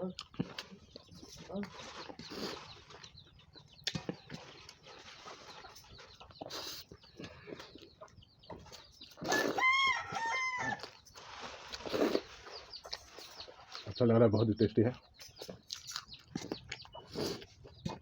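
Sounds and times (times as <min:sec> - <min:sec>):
rooster crowing: 0:09.3 - 0:10.9.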